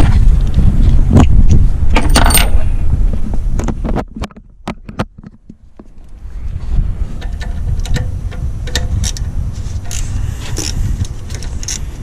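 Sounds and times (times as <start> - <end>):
wind buffeting microphone: 0.0 - 12.0
ratchet clicking: 7.2 - 12.0.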